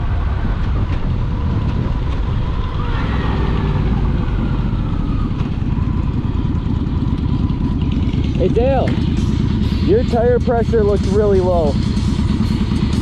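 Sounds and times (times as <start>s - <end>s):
wind rush over microphone: 0.0s - 5.2s
motorcycle engine running: 0.0s - 13.0s.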